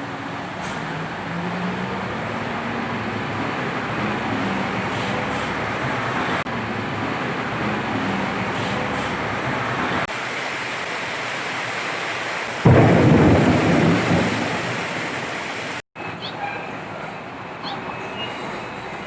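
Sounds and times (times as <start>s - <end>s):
heavy rain pouring: 0.0s - 6.4s, 7.9s - 15.8s
thunder clap rumbling: 12.6s - 15.8s.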